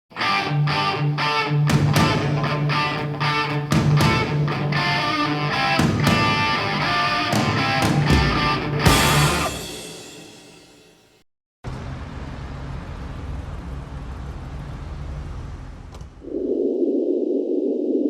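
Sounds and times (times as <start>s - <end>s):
rock music with electric guitar: 0.1s - 10.4s.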